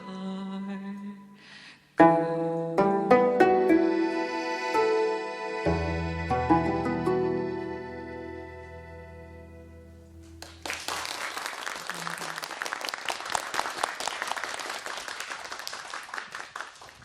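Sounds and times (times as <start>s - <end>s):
gayageum music: 0.0s - 10.6s
audience applause: 10.4s - 17.0s.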